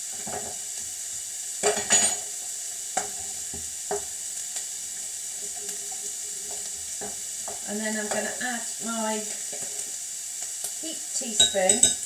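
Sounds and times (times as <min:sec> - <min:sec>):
food sizzling in a pan: 0:00.0 - 0:12.0
spoon clinking: 0:11.4 - 0:12.0.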